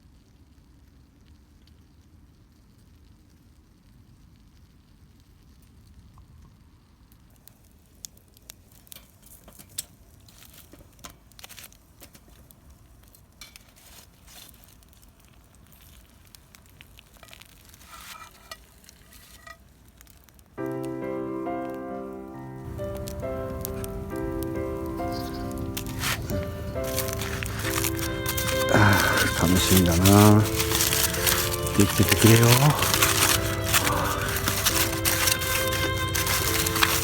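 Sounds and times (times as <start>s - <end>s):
fire crackles and pops: 0.0s - 37.0s
food sizzling over wood fire: 0.0s - 37.0s
music: 20.6s - 37.0s.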